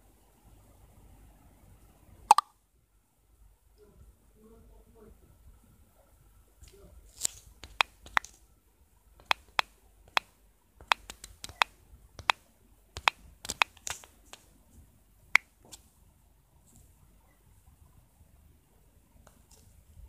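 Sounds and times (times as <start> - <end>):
sharp clicks: 7.2 - 8.4, 9.2 - 12.4, 13.0 - 14.5.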